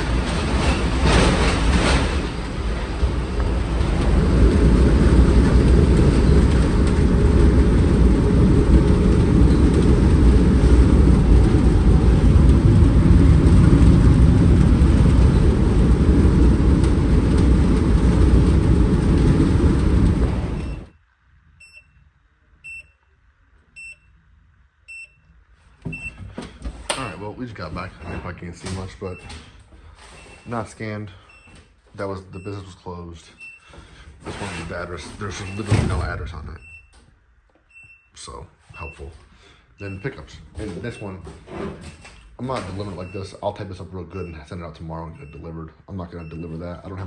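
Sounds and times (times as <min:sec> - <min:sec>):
truck engine and road rumble: 0:00.0 - 0:21.0, 0:34.2 - 0:36.7.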